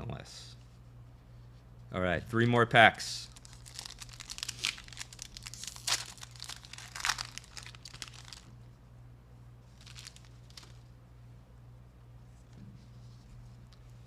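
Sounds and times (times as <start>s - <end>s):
foil wrapper tearing and crinkling: 3.3s - 8.5s, 9.8s - 10.8s.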